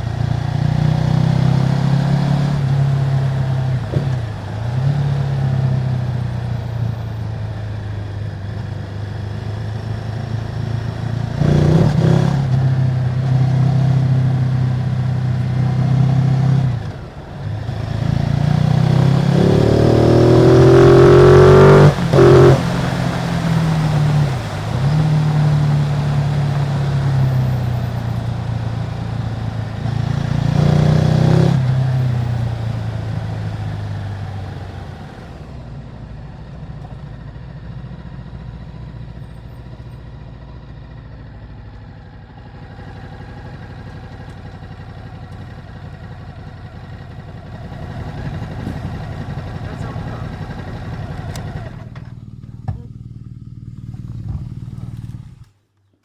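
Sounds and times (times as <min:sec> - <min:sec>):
engine revving up: 0:00.0 - 0:07.3, 0:08.6 - 0:35.6, 0:47.3 - 0:52.1
motorcycle engine running: 0:00.0 - 0:55.6.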